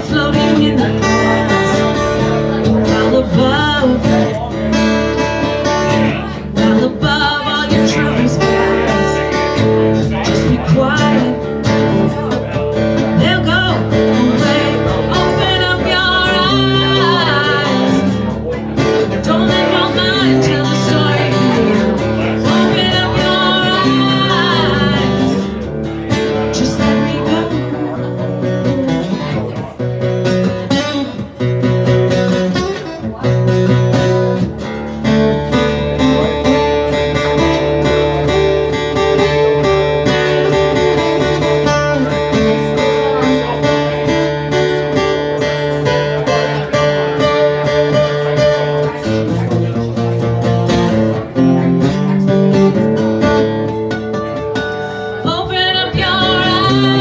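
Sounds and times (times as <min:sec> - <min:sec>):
person singing lead vocal: 0:00.0 - 0:29.7, 0:54.7 - 0:57.0
rock guitar: 0:00.0 - 0:57.0.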